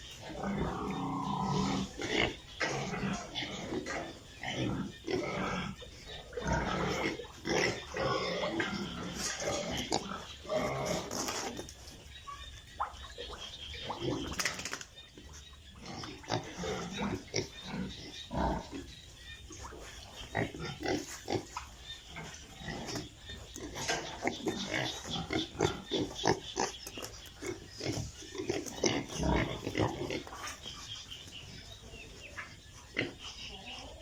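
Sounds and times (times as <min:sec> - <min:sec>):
piglets grunting and squealing: 0:00.0 - 0:11.9, 0:12.8 - 0:31.6, 0:32.3 - 0:34.0.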